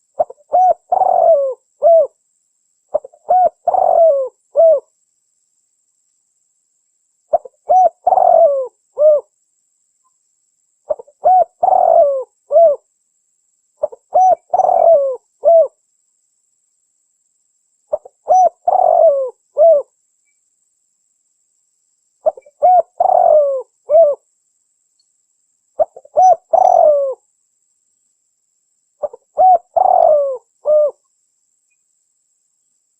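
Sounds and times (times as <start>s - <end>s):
dove cooing: 0.2s - 2.2s, 2.9s - 4.9s, 7.3s - 9.3s, 10.9s - 12.8s, 13.8s - 15.8s, 17.9s - 19.9s, 22.2s - 24.2s, 25.8s - 27.2s, 29.0s - 31.0s.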